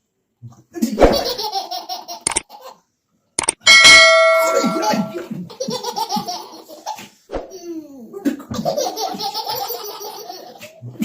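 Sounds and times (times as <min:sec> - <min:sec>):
babies laughing: 0:01.1 - 0:02.8, 0:04.8 - 0:11.0.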